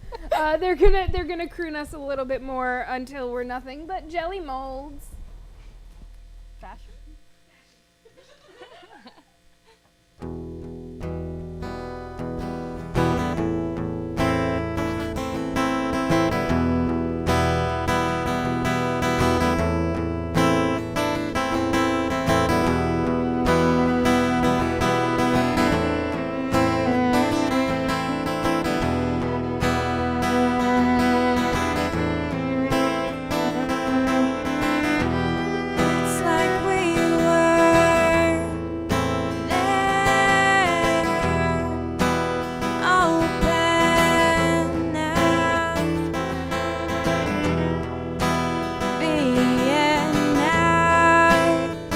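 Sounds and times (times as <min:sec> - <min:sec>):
acoustic guitar strumming: 0:10.2 - 0:51.9
person singing long notes: 0:35.9 - 0:38.6, 0:39.4 - 0:41.9, 0:42.8 - 0:46.1, 0:49.0 - 0:51.9.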